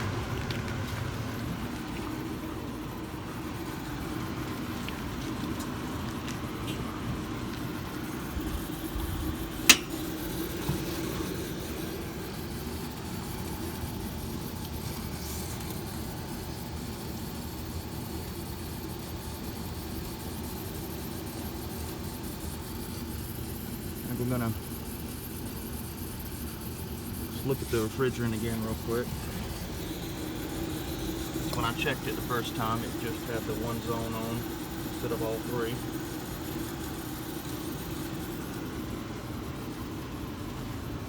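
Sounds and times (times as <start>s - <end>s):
air conditioner humming: 0.0s - 41.0s
sharp click: 9.6s - 10.0s.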